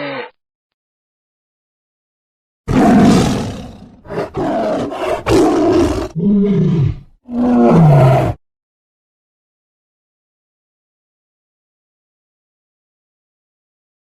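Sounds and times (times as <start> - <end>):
large animal roaring: 2.7 - 8.4.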